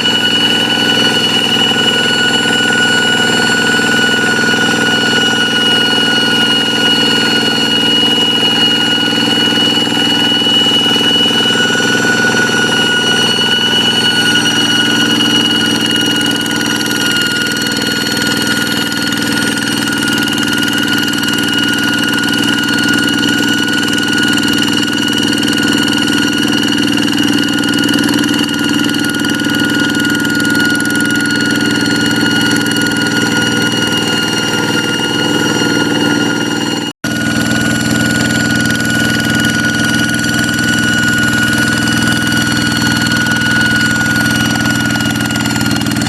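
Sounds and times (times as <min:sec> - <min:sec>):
diesel engine running: 0:00.0 - 0:46.0
high steady whine: 0:00.0 - 0:46.0.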